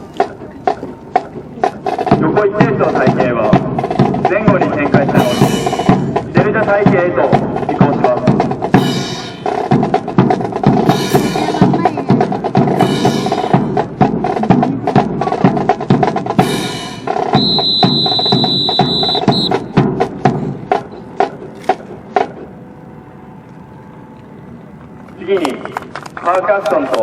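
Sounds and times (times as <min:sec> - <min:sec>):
drums playing: 0:00.0 - 0:22.6
high steady tone: 0:17.3 - 0:19.8.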